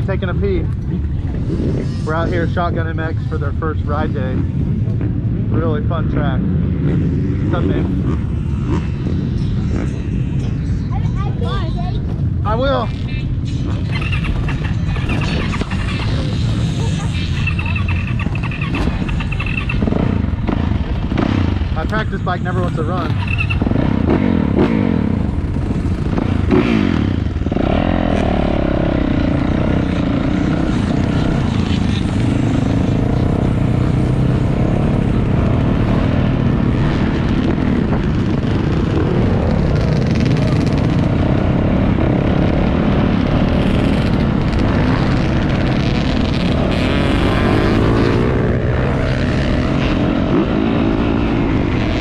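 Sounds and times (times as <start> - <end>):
dirt bike engine revving: 1.3 - 11.5, 12.2 - 52.0.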